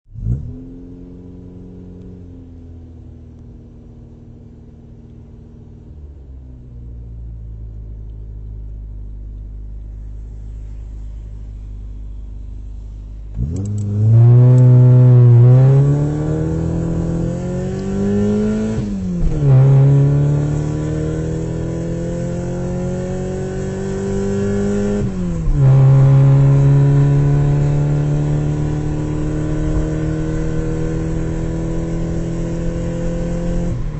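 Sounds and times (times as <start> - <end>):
car engine idling: 1.4 - 15.4
car accelerating through gears: 13.3 - 33.9.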